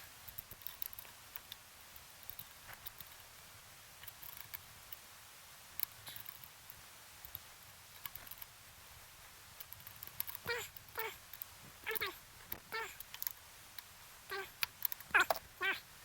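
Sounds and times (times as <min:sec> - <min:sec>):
small clicks and taps: 0:00.3 - 0:03.4, 0:04.0 - 0:05.0, 0:05.8 - 0:08.6, 0:09.6 - 0:13.9.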